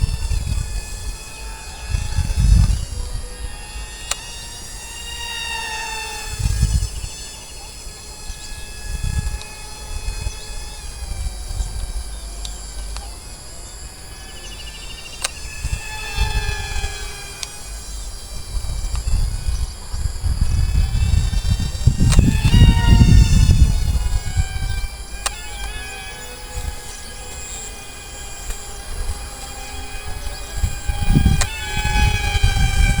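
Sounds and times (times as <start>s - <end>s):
model jet motor whine: 0.0s - 33.0s
low rumble bursts: 10.9s - 33.0s.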